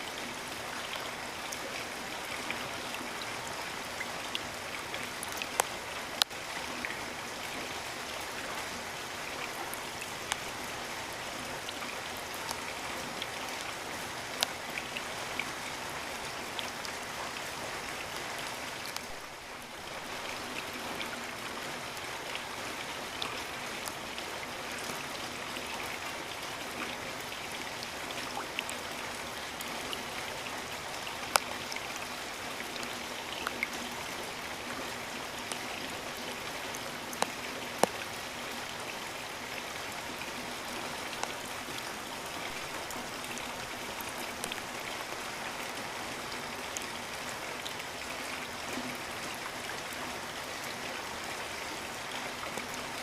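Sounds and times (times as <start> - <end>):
steady rain hissing: 0.0 - 53.0.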